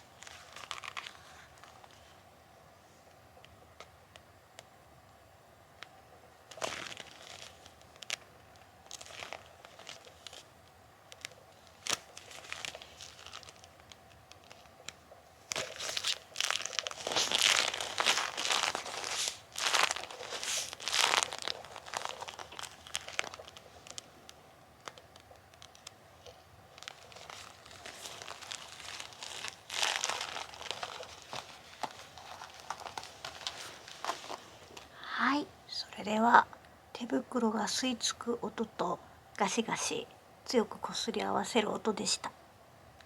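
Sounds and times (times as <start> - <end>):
rubber gloves rubbing together: 11.4 - 24.3, 26.8 - 34.9.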